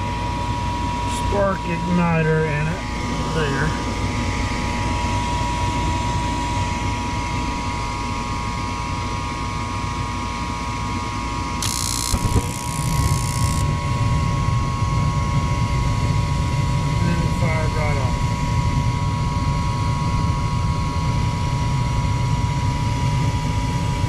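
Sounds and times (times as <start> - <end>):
low burner rumble: 0.0 - 10.0
furnace inducer motor whine: 0.0 - 24.0
spark igniter sparking: 11.6 - 13.6.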